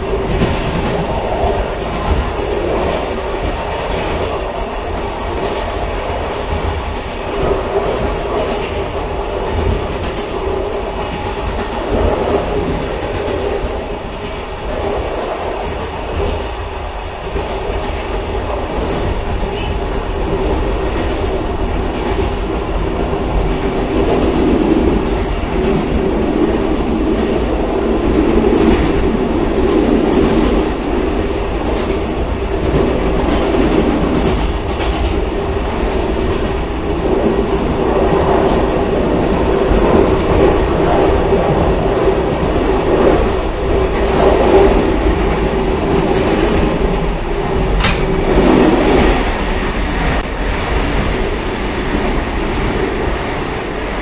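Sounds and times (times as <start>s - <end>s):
railcar rumble: 0.0s - 54.0s
wheels clacking over rail joints: 47.8s - 50.2s.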